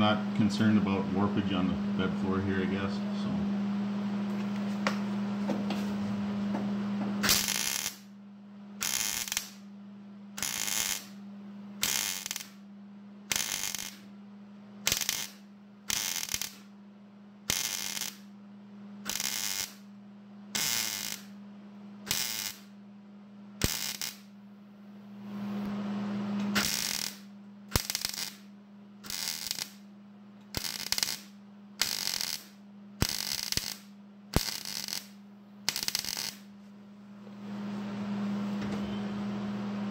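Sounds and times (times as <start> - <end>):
steady hum: 0.0 - 39.9
crackling welding bursts: 7.2 - 8.1, 8.8 - 9.7, 10.4 - 11.2, 11.8 - 12.6, 13.3 - 14.1, 14.8 - 16.7, 17.5 - 18.3, 19.1 - 19.9, 20.6 - 21.3, 22.1 - 22.7, 23.6 - 24.3, 26.5 - 29.8, 30.5 - 36.5.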